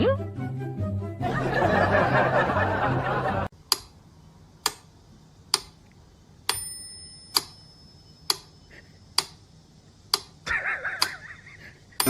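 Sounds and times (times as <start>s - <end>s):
small bell ring: 6.5s - 8.3s.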